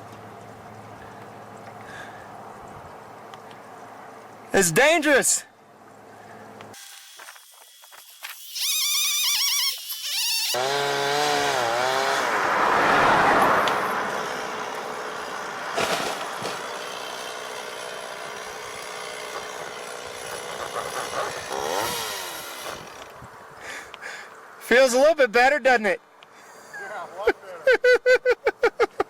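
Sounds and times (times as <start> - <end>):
chainsaw running at high revs: 10.4 - 12.6, 13.6 - 23.2.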